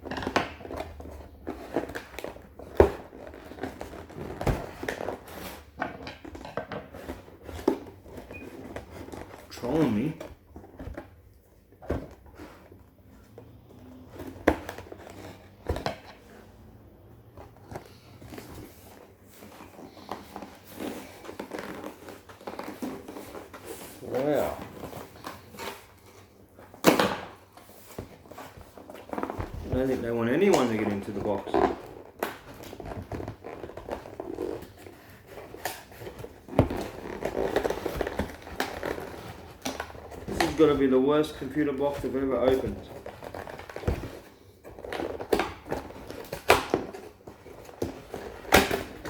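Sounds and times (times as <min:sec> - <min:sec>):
cardboard box rustling and scraping: 0:17.2 - 0:26.7, 0:27.6 - 0:49.0.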